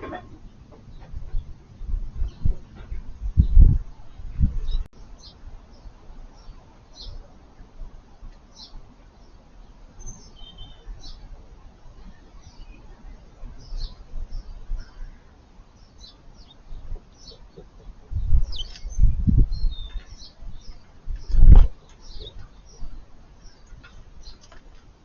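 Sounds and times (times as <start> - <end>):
low rumbling thuds: 0.0 - 4.9
songbirds chirping: 0.0 - 25.0.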